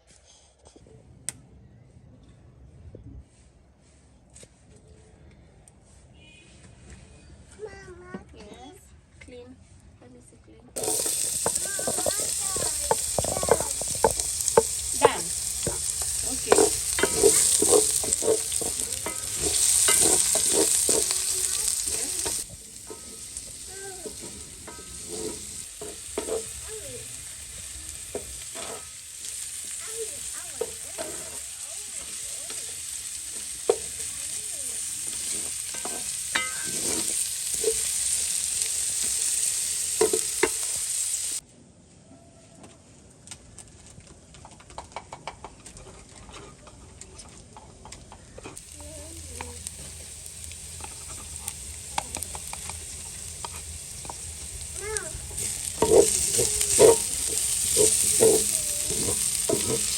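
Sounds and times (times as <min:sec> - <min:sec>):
utensil scraping a pan: 0:10.8 - 0:40.8, 0:48.6 - 0:59.9
food sizzling in hot oil: 0:10.8 - 0:41.4, 0:48.6 - 0:59.9.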